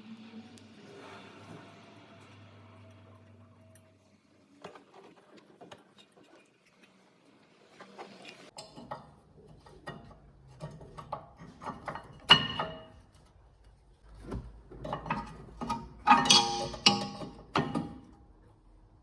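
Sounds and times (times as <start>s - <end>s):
metal tools clinking: 14.9s - 18.0s.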